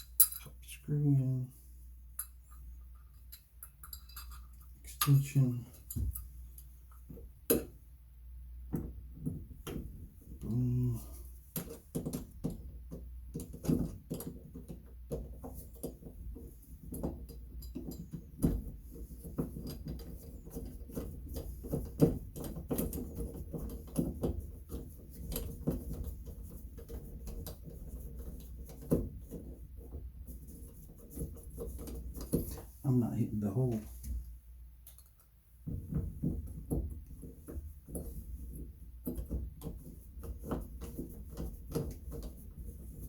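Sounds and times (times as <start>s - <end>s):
faucet parts clicking and scraping: 0.0s - 0.6s, 2.1s - 7.0s.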